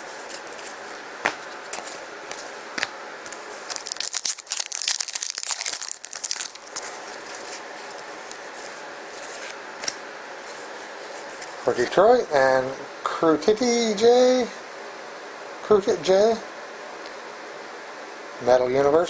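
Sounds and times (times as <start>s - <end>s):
card pack wrapper tearing and crinkling: 3.3s - 8.6s.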